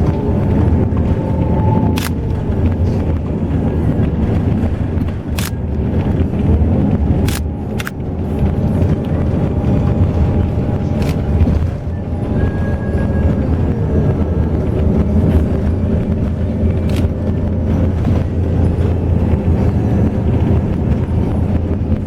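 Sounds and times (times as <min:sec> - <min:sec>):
bus engine and road noise: 0:00.0 - 0:22.0
sharp clicks or rattles: 0:04.2 - 0:06.5, 0:07.1 - 0:09.3.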